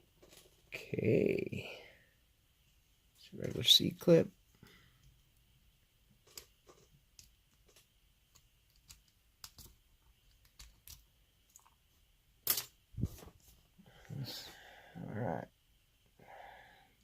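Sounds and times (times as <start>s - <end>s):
small metal parts clicking: 6.2s - 11.8s.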